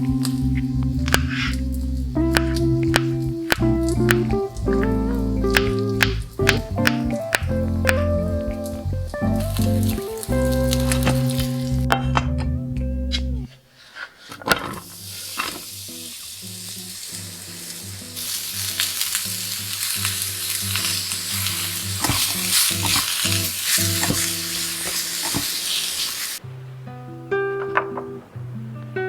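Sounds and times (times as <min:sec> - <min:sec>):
steady hiss: 0:00.0 - 0:11.9, 0:13.6 - 0:27.3
soft background music: 0:00.0 - 0:13.4.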